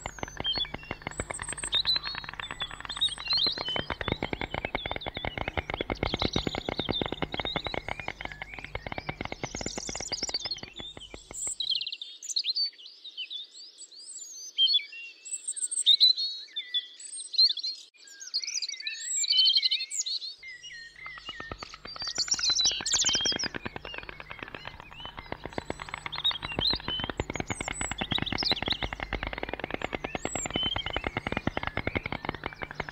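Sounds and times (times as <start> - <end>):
stork bill clattering: 0.0 - 11.7, 20.9 - 32.9
songbirds chirping: 0.0 - 11.8, 20.4 - 32.9.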